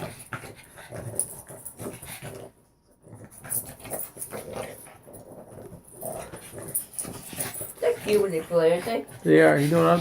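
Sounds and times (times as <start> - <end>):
dog vocal noises: 0.0 - 10.0
dogs scuffling: 3.3 - 10.0.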